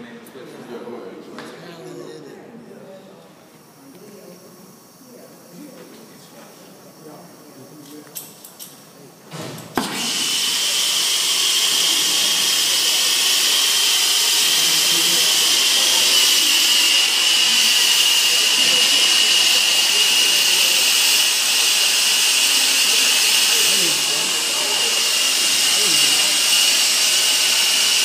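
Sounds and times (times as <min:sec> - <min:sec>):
torch igniting pop: 0:09.3 - 0:10.0
torch flame hissing and whistling: 0:09.8 - 0:28.0.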